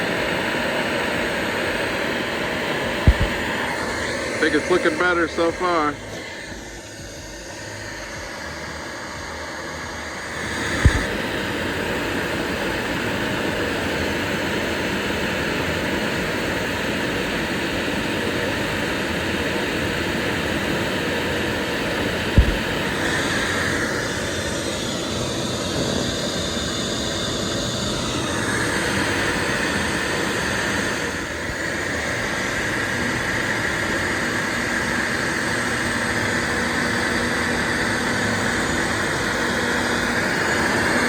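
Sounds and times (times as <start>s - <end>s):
router spindle whining: 2.7s - 13.4s
low thump: 3.1s - 3.4s, 10.8s - 11.2s, 22.4s - 22.8s.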